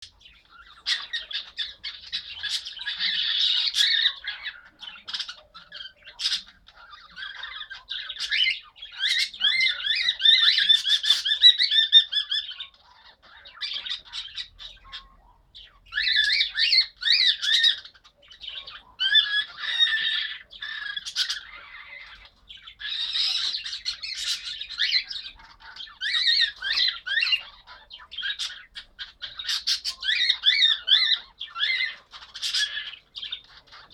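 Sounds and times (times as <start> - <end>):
birds warbling calls: 0.0 - 33.9.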